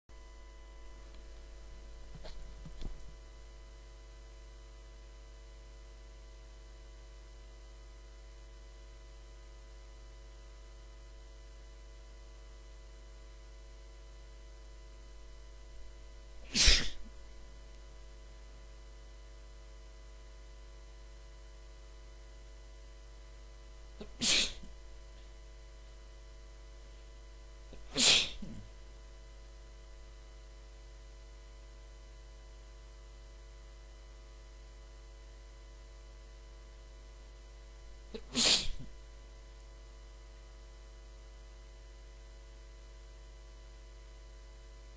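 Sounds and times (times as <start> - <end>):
electrical hum: 0.1 - 5.1, 12.0 - 44.9
person sneezing: 2.1 - 3.0, 16.4 - 17.2, 24.0 - 24.8, 27.7 - 28.8, 38.1 - 39.0
short intake of breath: 16.5 - 17.0, 24.0 - 24.7, 27.8 - 28.6.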